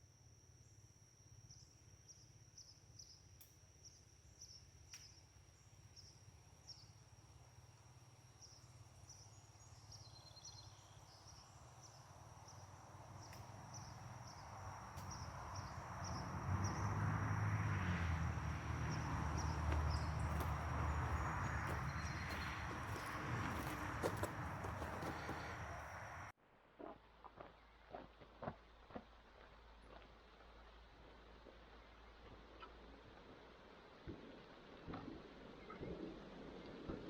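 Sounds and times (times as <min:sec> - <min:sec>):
insects chirping: 0:00.1 - 0:26.3.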